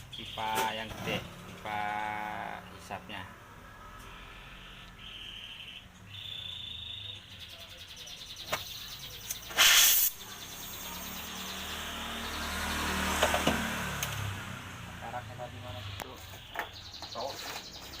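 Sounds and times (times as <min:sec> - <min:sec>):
gas torch hissing: 0:09.4 - 0:10.2.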